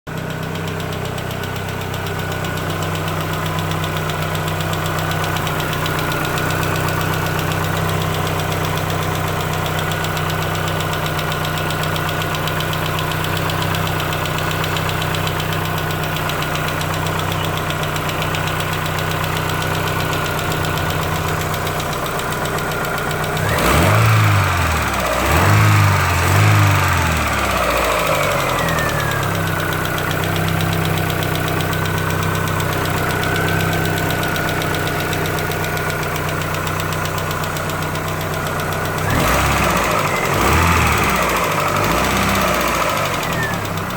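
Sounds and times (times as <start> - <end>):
car engine idling with rod knock: 0.1 - 43.9
engine revving: 19.1 - 43.9.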